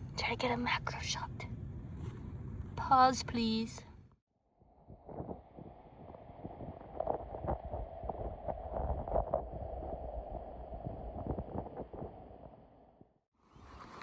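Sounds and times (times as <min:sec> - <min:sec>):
clicks and knocks underwater: 0:05.1 - 0:12.7.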